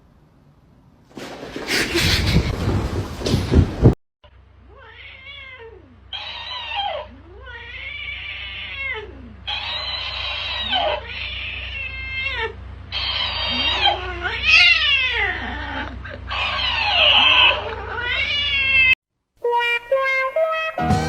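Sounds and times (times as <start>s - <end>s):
cat yowling: 4.7s - 19.0s.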